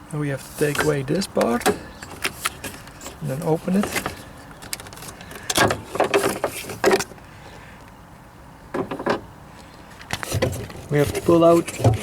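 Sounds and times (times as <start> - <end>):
handling noise: 0.4 - 7.2.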